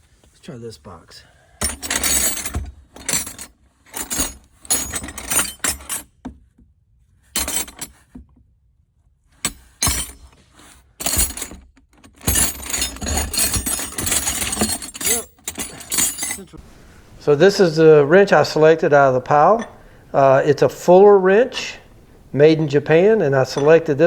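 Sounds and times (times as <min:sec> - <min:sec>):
metal wrenches clinking: 0:01.6 - 0:06.2, 0:07.4 - 0:08.1, 0:09.5 - 0:16.6, 0:23.4 - 0:24.0.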